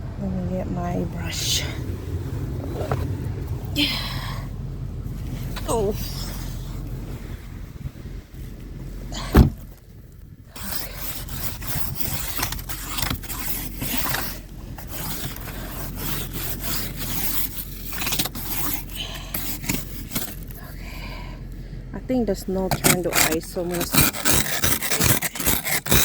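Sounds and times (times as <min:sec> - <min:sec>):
sharp thump: 0:09.3 - 0:09.7
scraper scraping ice off car: 0:10.5 - 0:20.8, 0:22.4 - 0:26.0.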